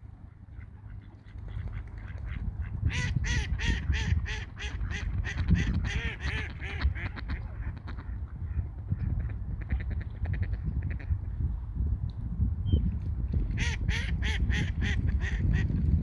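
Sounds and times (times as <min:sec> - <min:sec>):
ducks quacking: 0:00.5 - 0:11.1.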